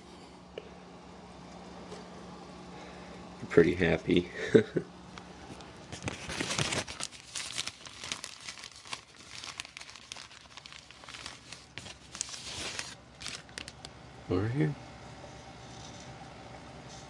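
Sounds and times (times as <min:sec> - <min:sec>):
crinkling and crackling: 0:05.4 - 0:14.0.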